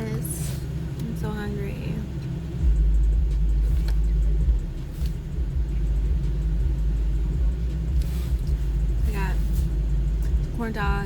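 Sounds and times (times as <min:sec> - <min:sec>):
car engine idling from inside: 0:00.0 - 0:11.0.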